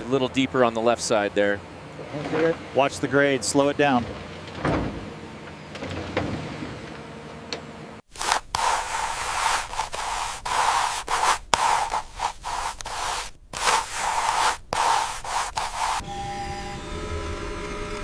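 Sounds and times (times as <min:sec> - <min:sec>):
harsh scratchy scraping: 0:08.1 - 0:16.0.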